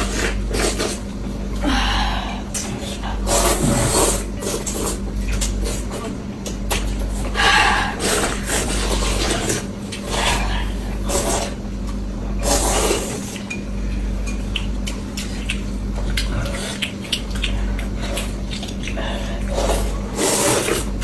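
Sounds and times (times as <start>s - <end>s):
noodle slurping: 2.6s - 5.8s, 7.2s - 11.6s, 12.4s - 13.4s, 16.2s - 21.0s
chewing: 12.6s - 21.0s.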